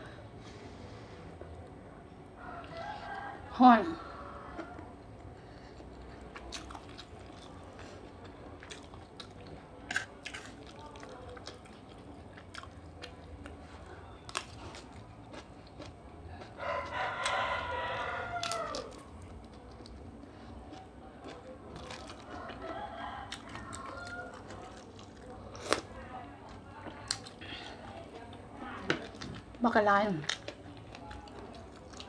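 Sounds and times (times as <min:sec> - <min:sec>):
rooster crowing: 0:02.4 - 0:05.0, 0:16.6 - 0:19.1, 0:22.3 - 0:24.7
person chewing food: 0:04.3 - 0:29.6, 0:30.2 - 0:32.0.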